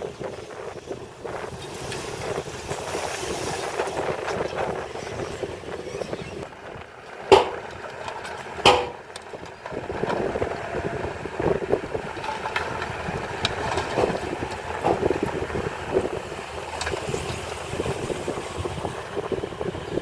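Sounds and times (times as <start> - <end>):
heavy machinery engine: 0.1 - 20.0
loud sharp knocks: 7.3 - 7.7, 8.7 - 9.0.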